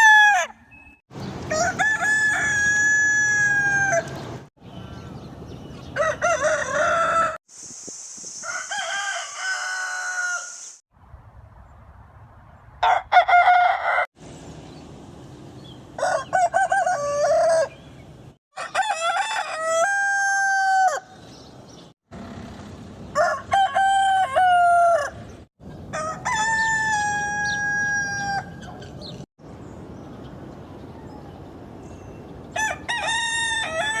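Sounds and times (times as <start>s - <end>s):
roosters crowing: 0.0s - 0.6s, 1.5s - 4.3s, 5.8s - 7.4s, 8.4s - 10.8s, 12.8s - 14.1s, 16.0s - 17.9s, 18.5s - 21.2s, 23.1s - 28.9s, 32.5s - 34.0s
background hiss: 7.5s - 10.8s.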